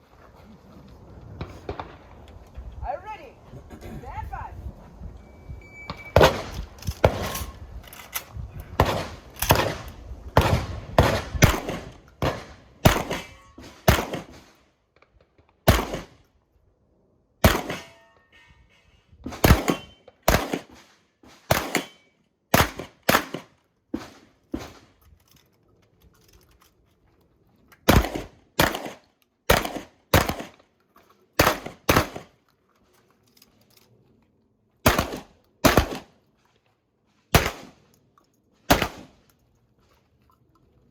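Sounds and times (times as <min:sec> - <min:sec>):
shotgun shots: 0:05.9 - 0:07.6, 0:08.8 - 0:14.5, 0:15.6 - 0:16.2, 0:17.4 - 0:18.0, 0:19.3 - 0:20.9, 0:21.5 - 0:24.9, 0:27.9 - 0:30.6, 0:31.4 - 0:32.3, 0:34.8 - 0:36.1, 0:37.3 - 0:37.8, 0:38.7 - 0:39.2.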